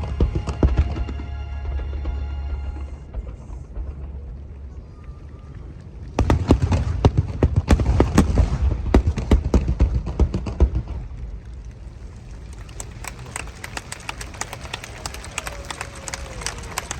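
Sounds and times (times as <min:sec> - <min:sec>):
fireworks boom and rumble: 0:00.0 - 0:16.9
fireworks crackling: 0:06.1 - 0:16.9.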